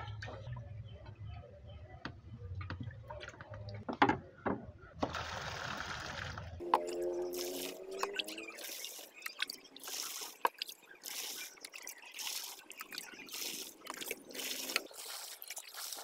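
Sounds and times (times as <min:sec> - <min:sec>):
water pouring: 0:05.2 - 0:16.0
water splashing: 0:05.2 - 0:16.0.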